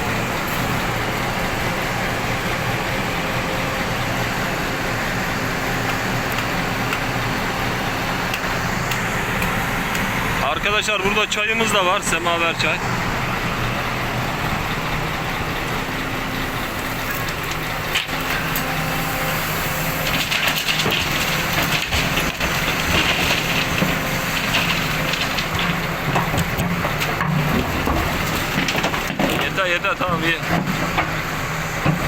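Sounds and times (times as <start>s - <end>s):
diesel engines running: 0.0s - 32.0s
rubble pouring into truck bed: 17.2s - 32.0s.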